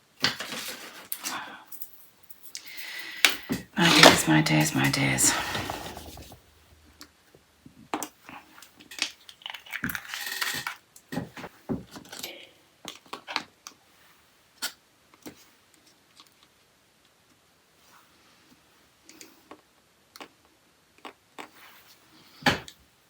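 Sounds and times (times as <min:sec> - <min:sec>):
tools and bottles clicking and tapping: 0:09.8 - 0:12.2.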